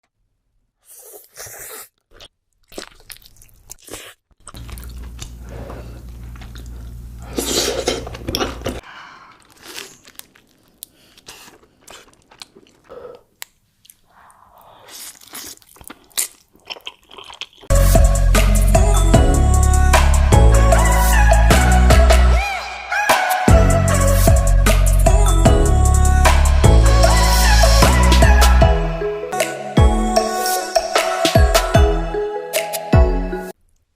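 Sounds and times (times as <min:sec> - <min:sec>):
crunching bites and chewing: 0:00.9 - 0:07.1, 0:09.3 - 0:17.7
loud background music: 0:17.7 - 0:33.5.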